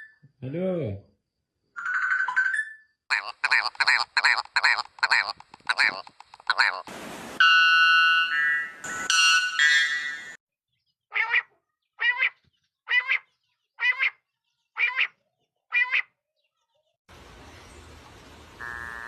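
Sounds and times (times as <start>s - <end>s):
bird nasal double-note call: 18.6s - 19.0s.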